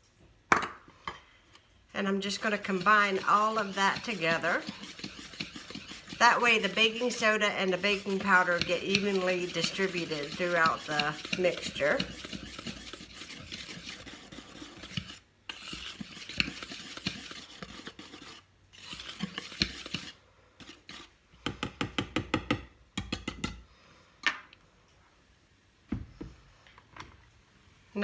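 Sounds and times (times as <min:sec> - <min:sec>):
utensil scraping mixing bowl: 0:02.1 - 0:21.2.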